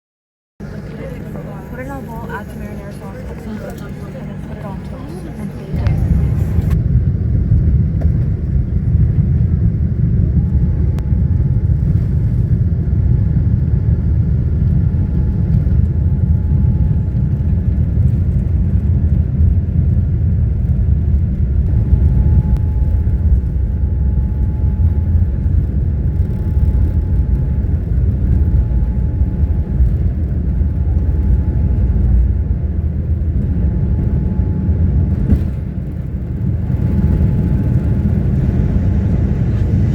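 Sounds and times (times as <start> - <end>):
jet engines rumbling: 0.6 - 39.9
faint high whine: 21.6 - 35.6.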